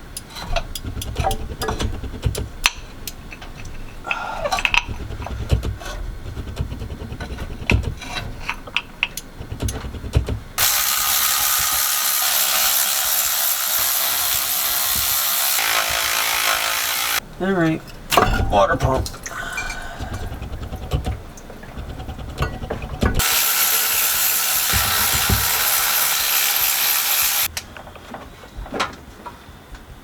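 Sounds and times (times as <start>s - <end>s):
hand ratchet clicking: 9.0s - 17.2s, 20.0s - 27.5s
loud steady hiss: 10.6s - 17.2s, 23.2s - 27.5s
metal tools knocking: 17.7s - 23.2s.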